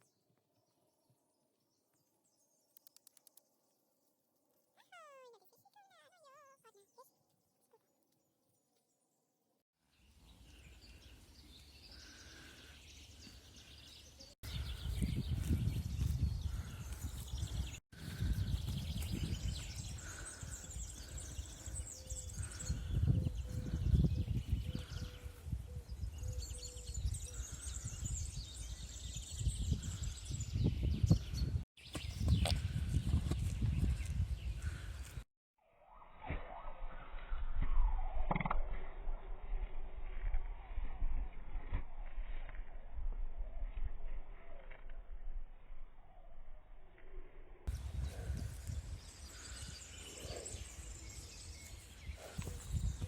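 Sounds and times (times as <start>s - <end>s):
small birds chirping and trilling: 4.8s - 8.9s, 9.9s - 35.2s, 47.7s - 53.0s
faint bird chirps: 4.8s - 9.0s
low wind rumble: 14.5s - 31.6s, 47.7s - 53.0s.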